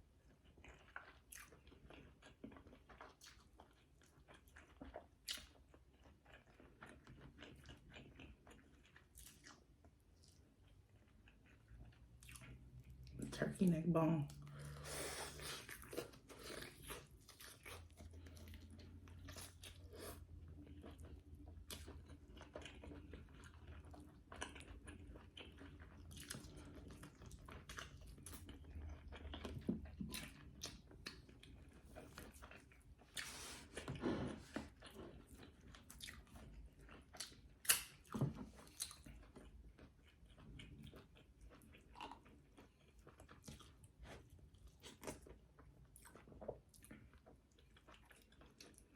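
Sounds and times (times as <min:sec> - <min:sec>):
chewing and biting food: 0:00.0 - 0:13.4, 0:14.3 - 0:48.9.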